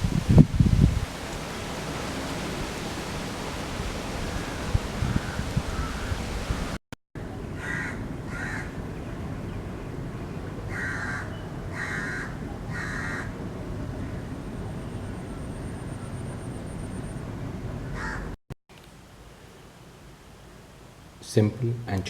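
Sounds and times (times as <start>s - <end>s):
crow cawing: 4.3s - 6.7s, 7.6s - 8.8s, 10.7s - 13.4s, 17.8s - 18.4s
low background hiss: 18.7s - 22.0s.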